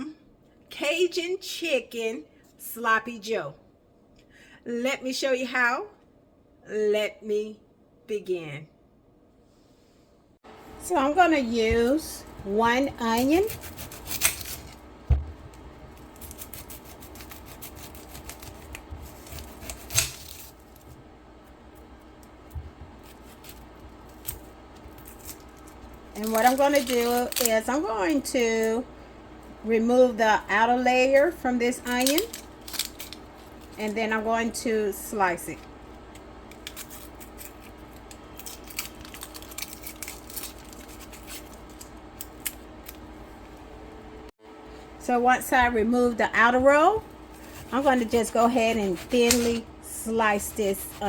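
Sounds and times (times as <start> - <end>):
onion skin crackling: 11.9 - 15.0, 15.6 - 21.0, 21.8 - 28.2, 31.7 - 34.0, 36.0 - 43.1, 47.2 - 51.0.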